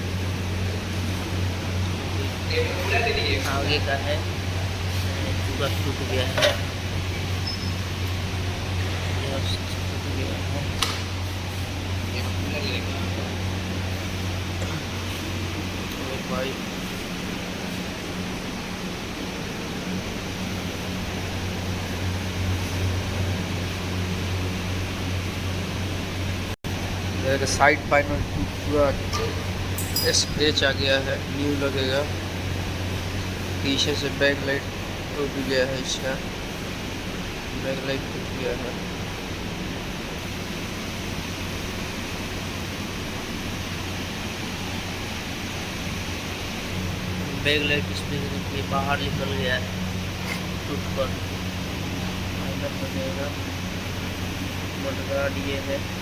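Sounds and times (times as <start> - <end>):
machine hum: 0.0 - 56.0.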